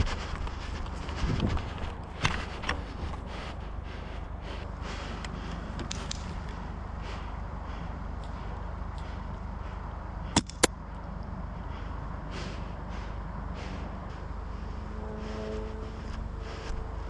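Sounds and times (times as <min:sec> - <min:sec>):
wind on microphone: 0:00.0 - 0:03.5.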